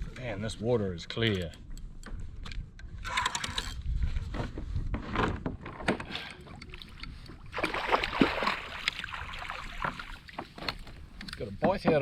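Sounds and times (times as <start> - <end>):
knocks and clatter on a kayak: 1.1 - 12.0
water splashing: 6.4 - 11.0.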